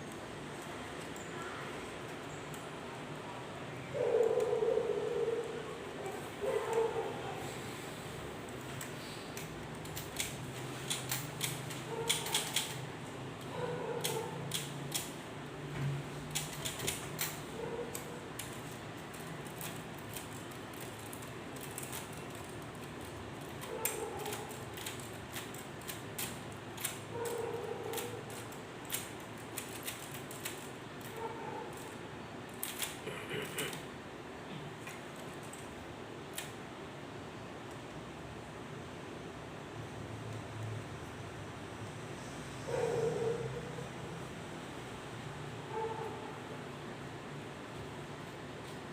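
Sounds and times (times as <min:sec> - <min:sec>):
typewriter clicks and clacks: 0:08.8 - 0:12.8, 0:14.0 - 0:15.2, 0:16.3 - 0:31.9, 0:32.5 - 0:33.8.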